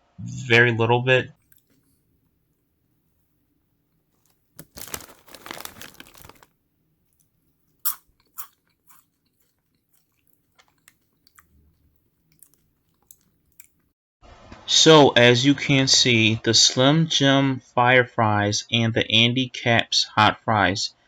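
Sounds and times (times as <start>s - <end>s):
person crunching snack chips: 4.2s - 13.8s.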